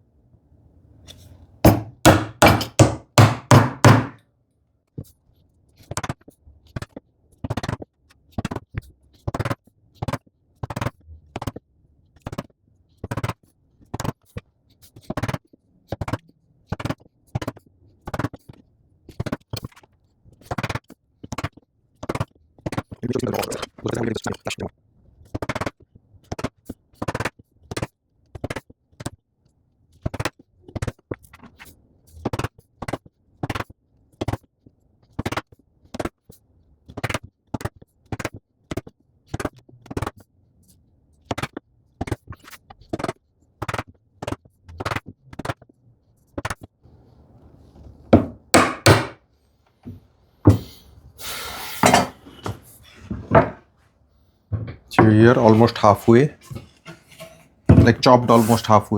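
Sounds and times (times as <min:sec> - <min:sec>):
mallet striking chisel: 0:01.7 - 0:04.2, 0:48.2 - 0:49.2.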